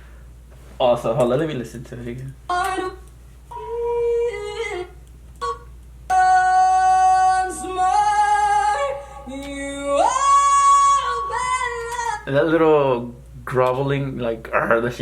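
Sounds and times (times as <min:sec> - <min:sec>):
woman singing solo: 0:02.5 - 0:12.3.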